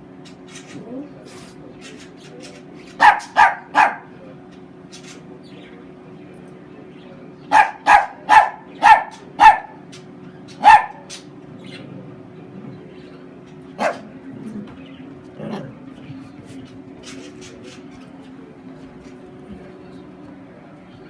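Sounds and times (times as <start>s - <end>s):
dog barking: 3.0s - 4.1s, 7.5s - 9.8s, 10.6s - 11.1s, 13.8s - 14.1s.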